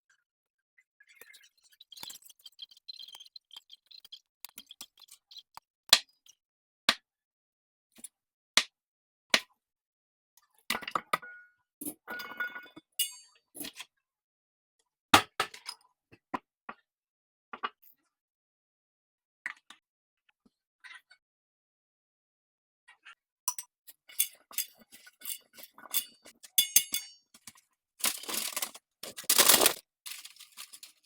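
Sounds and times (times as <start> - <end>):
dishware clinking and knocking: 12.1 - 13.2, 24.2 - 27.2
scraping and rustling: 28.0 - 31.0.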